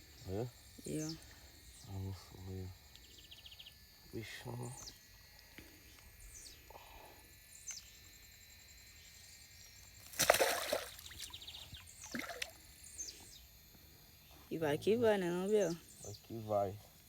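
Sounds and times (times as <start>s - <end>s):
birds chirping: 0.0s - 5.1s, 9.0s - 16.9s
insects buzzing: 0.0s - 17.0s
water splash: 10.1s - 11.3s, 12.1s - 12.6s.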